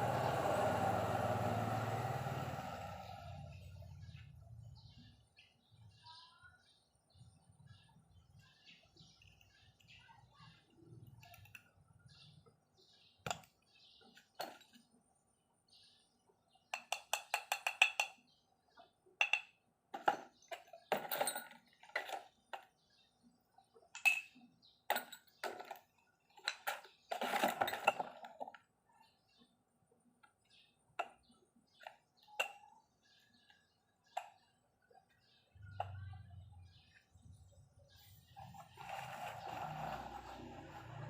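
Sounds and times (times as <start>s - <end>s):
metal parts clinking: 20.0s - 22.6s.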